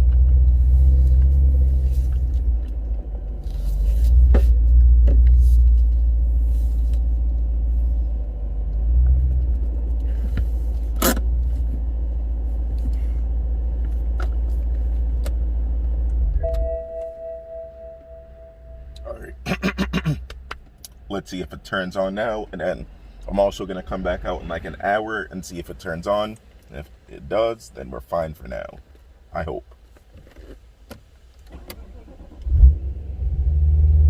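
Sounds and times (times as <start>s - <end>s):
car engine low rumble: 0.0s - 34.0s
faint steady tones: 16.3s - 19.4s.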